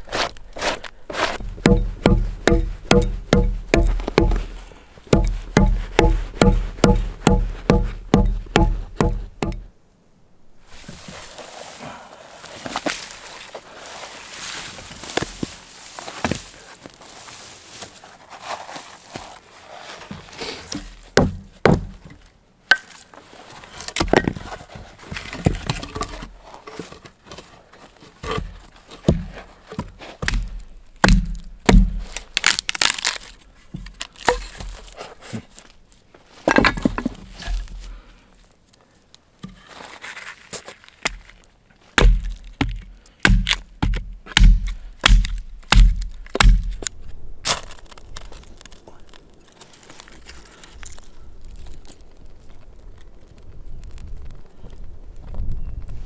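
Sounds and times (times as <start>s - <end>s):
axe chopping into log: 0.6s - 9.7s, 21.2s - 22.1s, 29.1s - 33.2s, 42.0s - 46.8s.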